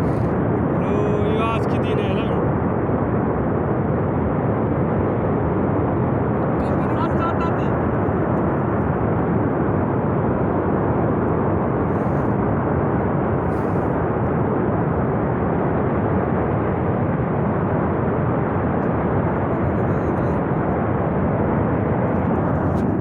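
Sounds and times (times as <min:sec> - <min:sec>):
flood torrent rushing: 0:00.0 - 0:02.4, 0:06.4 - 0:09.5.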